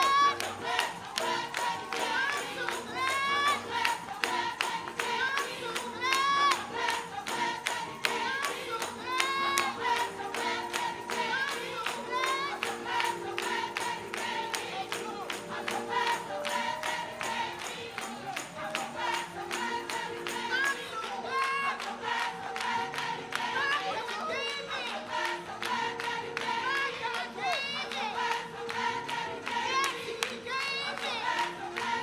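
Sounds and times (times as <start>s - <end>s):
person singing: 0.0s - 21.7s
tambourine: 0.0s - 22.3s
hand claps: 0.0s - 32.0s.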